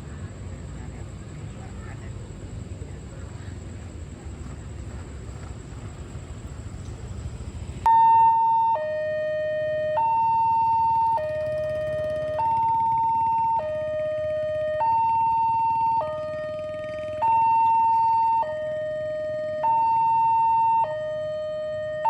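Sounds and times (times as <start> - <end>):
low traffic noise: 0.0 - 22.0
level-crossing two-tone alarm: 7.8 - 22.0.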